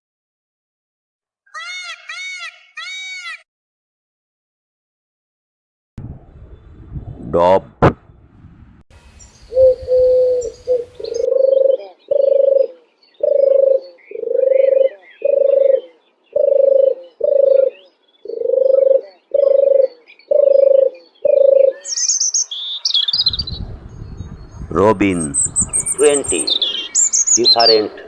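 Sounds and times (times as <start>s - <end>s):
small birds chirping: 9.0s - 28.0s
dove cooing: 9.5s - 21.9s, 25.8s - 28.0s.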